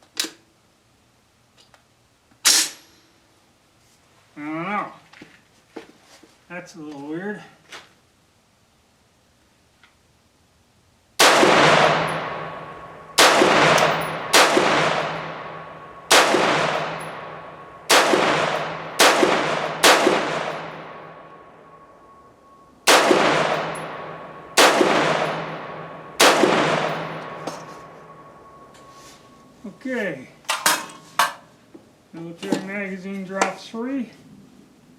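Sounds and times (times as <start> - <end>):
rifle shots echoing: 11.2 - 28.9.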